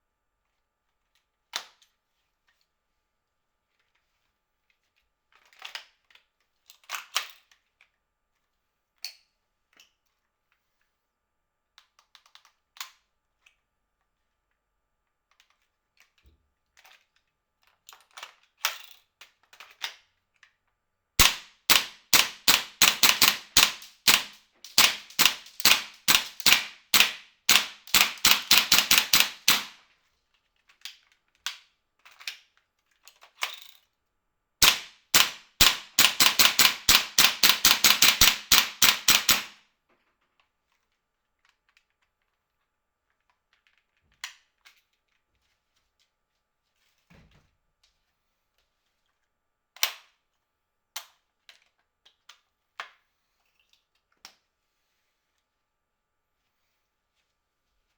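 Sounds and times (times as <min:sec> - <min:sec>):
airsoft rifle shots: 0:21.2 - 0:29.8, 0:34.6 - 0:39.6.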